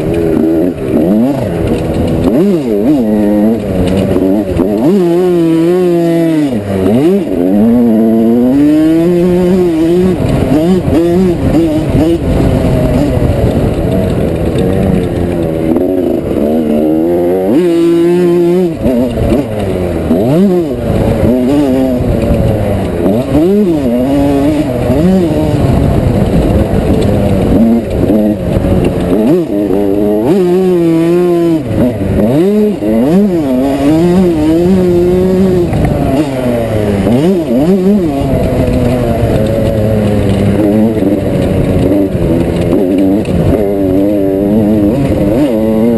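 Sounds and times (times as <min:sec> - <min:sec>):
two-stroke motorcycle engine revving: 0:00.0 - 0:45.9.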